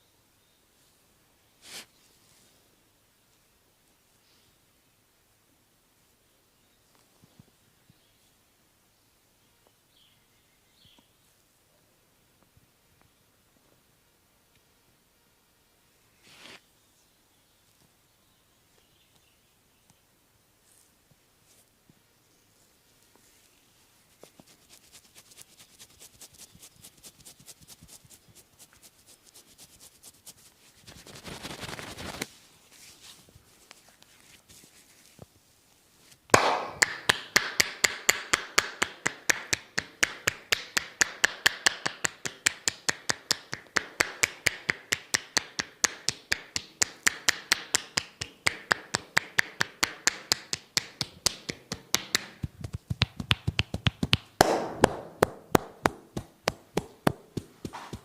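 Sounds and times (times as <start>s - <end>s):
faint massage taps: 36.3s - 58.0s
hand slaps on body: 36.3s - 58.0s.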